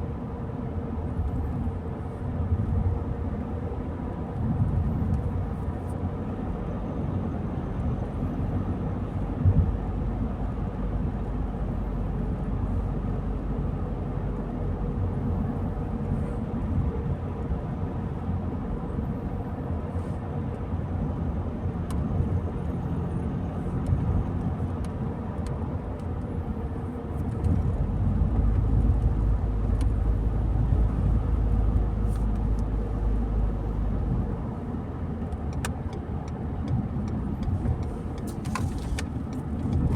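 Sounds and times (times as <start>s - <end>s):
car engine and tyre rumble: 0.0s - 39.9s.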